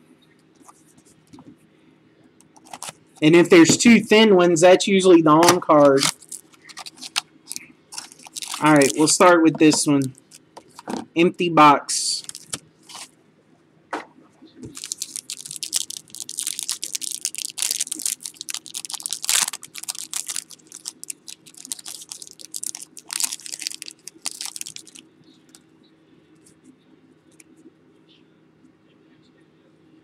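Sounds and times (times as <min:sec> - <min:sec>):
plastic wrapper crinkling: 0:02.6 - 0:03.0, 0:05.7 - 0:09.2, 0:09.8 - 0:10.9, 0:12.2 - 0:13.1, 0:14.7 - 0:25.6
cards ticking: 0:05.5 - 0:10.8, 0:12.2 - 0:13.1, 0:14.8 - 0:25.6.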